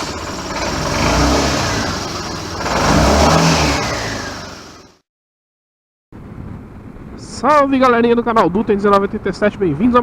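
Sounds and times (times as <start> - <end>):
motorcycle engine revving: 0.0 - 5.0.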